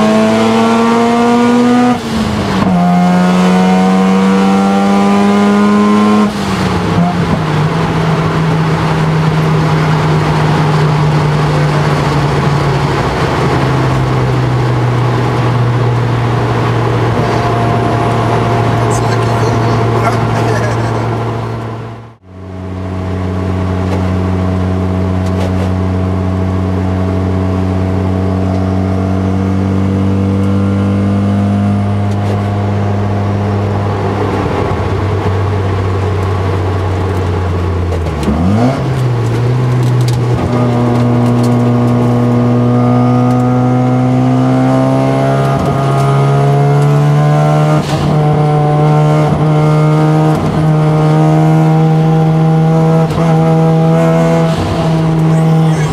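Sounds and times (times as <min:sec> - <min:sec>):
rotary engine from inside car: 0:22.5 - 0:32.6, 0:35.2 - 0:55.9.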